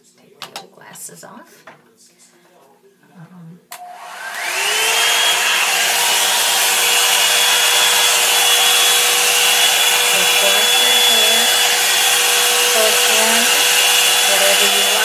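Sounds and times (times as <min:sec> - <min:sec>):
hair dryer motor whine: 0:03.8 - 0:15.0
rush of blowing air: 0:04.0 - 0:15.0.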